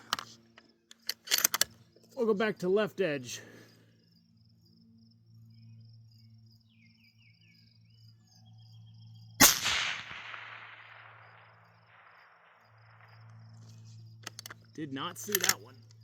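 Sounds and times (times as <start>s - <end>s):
faint insect chirping: 0.0s - 16.0s
rifle shot with rolling echo: 9.4s - 13.6s.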